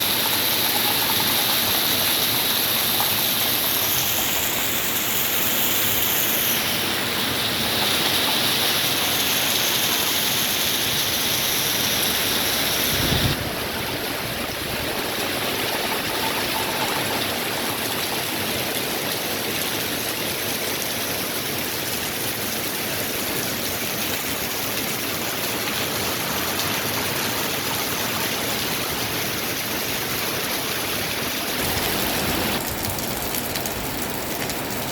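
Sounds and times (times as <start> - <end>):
high hiss: 0.0 - 13.4
heavy rain pouring: 0.0 - 34.9.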